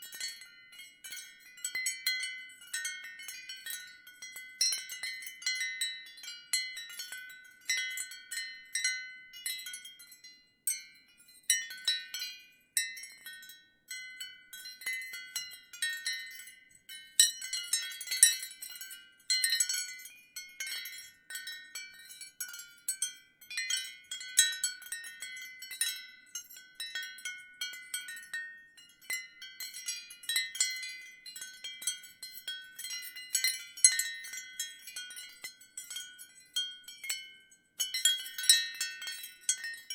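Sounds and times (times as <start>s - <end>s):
ceramic wind chimes clinking: 0.0s - 39.9s.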